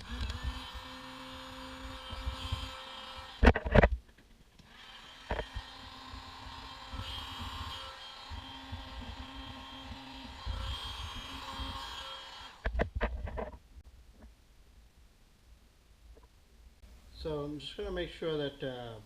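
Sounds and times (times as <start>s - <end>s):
heat gun humming: 0.0s - 3.8s, 4.6s - 12.8s.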